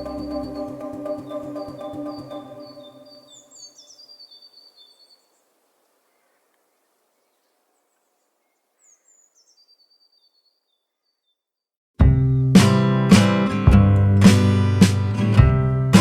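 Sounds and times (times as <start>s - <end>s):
faint bird chirps: 0.0s - 11.6s.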